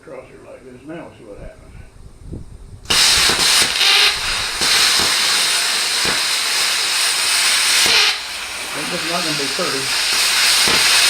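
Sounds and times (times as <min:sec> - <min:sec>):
plasma cutter hissing: 0:02.9 - 0:11.0.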